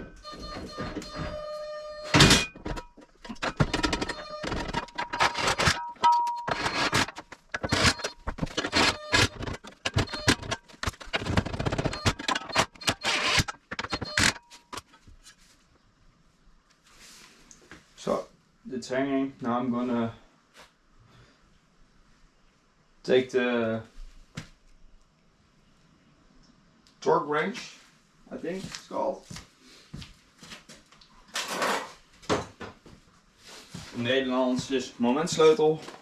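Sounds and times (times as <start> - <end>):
metallic clanks and scrapes: 2.2 - 14.9, 31.4 - 32.0.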